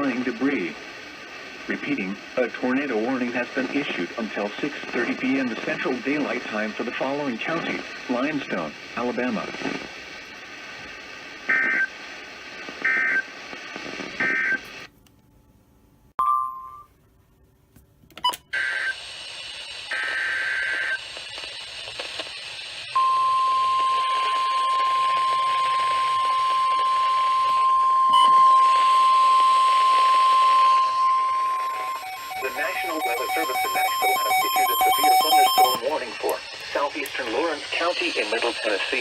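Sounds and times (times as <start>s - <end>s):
steady warning alarm tone: 23.0s - 36.0s
digital data burst tones: 30.6s - 38.6s.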